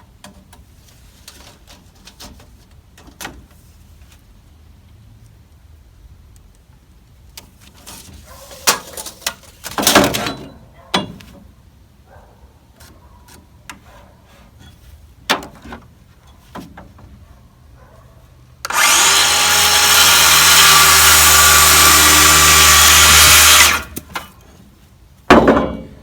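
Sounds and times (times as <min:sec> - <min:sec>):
power saw cutting wood: 0:18.7 - 0:24.3.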